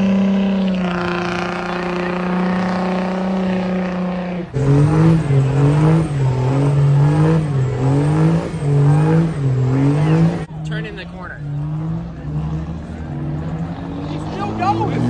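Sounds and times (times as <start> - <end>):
engine at steady high rev: 0.0 - 10.5
engine revving up and down: 0.0 - 10.5.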